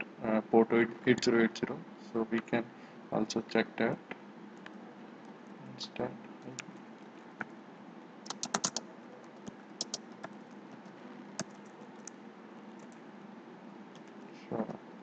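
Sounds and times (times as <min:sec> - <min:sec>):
keyboard typing: 0:08.2 - 0:12.2, 0:12.8 - 0:13.0.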